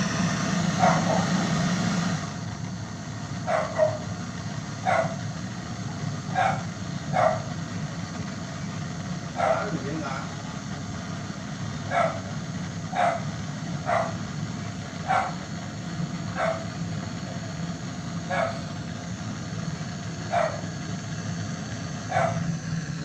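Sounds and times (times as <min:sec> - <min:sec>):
low machine hum: 0:00.0 - 0:23.0
dog barking: 0:00.8 - 0:01.4, 0:03.5 - 0:04.1, 0:04.8 - 0:05.2, 0:06.3 - 0:07.5, 0:09.4 - 0:10.3, 0:11.9 - 0:12.3, 0:12.9 - 0:14.2, 0:15.0 - 0:15.4, 0:16.3 - 0:16.7, 0:18.3 - 0:18.6, 0:20.3 - 0:20.6, 0:22.1 - 0:22.4.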